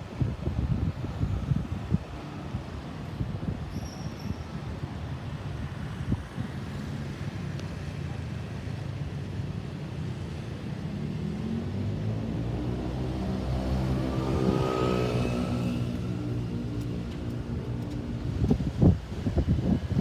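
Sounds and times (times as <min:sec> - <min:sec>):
road traffic rumble: 0:00.0 - 0:20.0
vehicle engine accelerating: 0:11.2 - 0:19.0.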